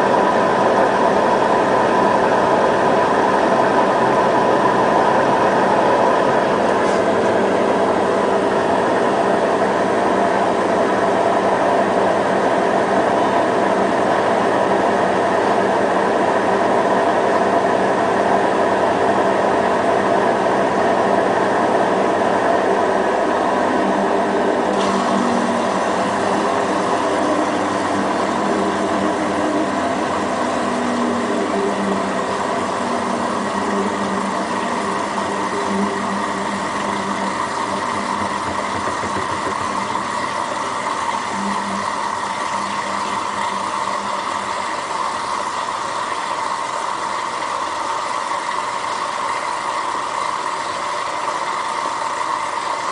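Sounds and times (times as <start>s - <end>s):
washing machine spin cycle hum: 0.0s - 52.9s.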